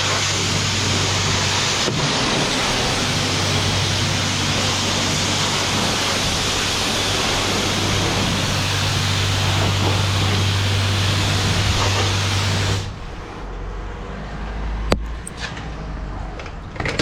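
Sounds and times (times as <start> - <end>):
pressure washer spraying water: 0.0 - 13.5
low hum: 0.0 - 13.7.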